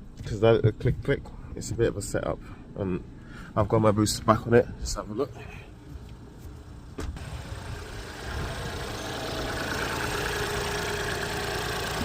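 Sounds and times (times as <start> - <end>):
car engine idling: 6.6 - 12.0.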